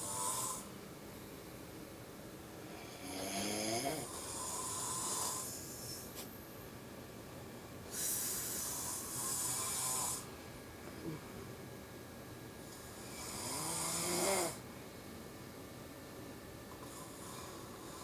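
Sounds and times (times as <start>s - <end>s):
person snoring: 0.0s - 0.7s, 2.7s - 5.9s, 7.9s - 10.3s, 13.0s - 14.6s.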